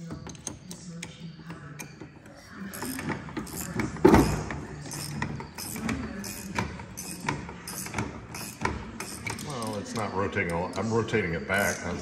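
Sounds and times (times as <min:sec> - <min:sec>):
hand tools clanking on steel: 0:02.7 - 0:10.9.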